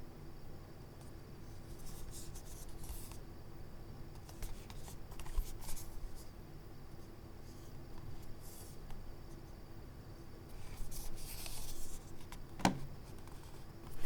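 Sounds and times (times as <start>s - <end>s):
mouse rubbing and sliding: 10.5s - 12.3s.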